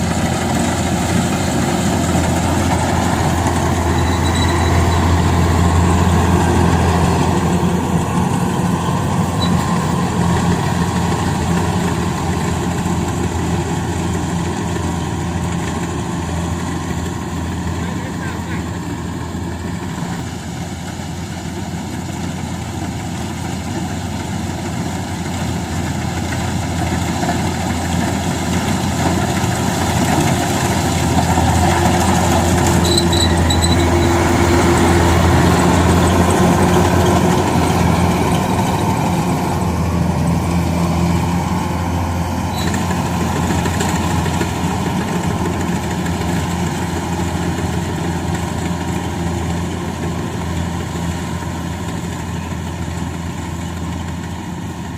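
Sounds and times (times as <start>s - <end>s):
harvester engine running: 0.0s - 54.9s
brief high tone: 3.7s - 5.9s.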